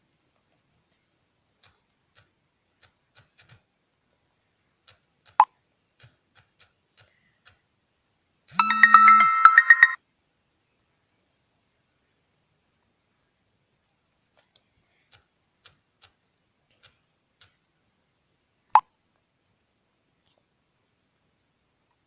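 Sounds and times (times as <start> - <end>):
phone electronic chime: 8.6 - 10.0.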